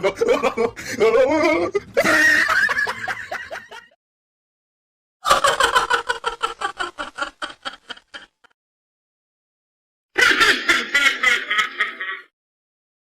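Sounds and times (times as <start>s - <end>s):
person laughing: 0.0s - 4.0s, 5.2s - 8.6s, 10.2s - 12.3s.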